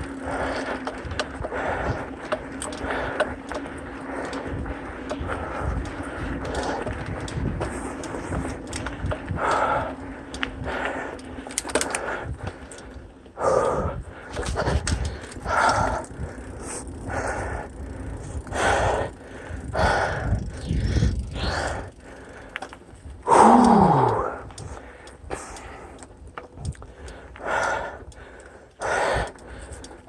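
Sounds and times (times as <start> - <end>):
person breathing hard: 0.0 - 30.0
voiced groan: 23.3 - 24.4.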